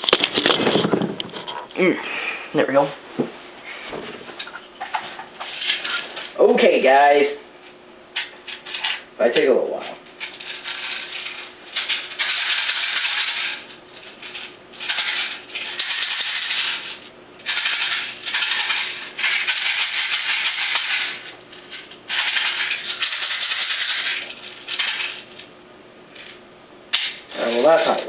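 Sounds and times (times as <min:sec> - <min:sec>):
plastic pellets rattling in magazine: 0:10.2 - 0:25.5.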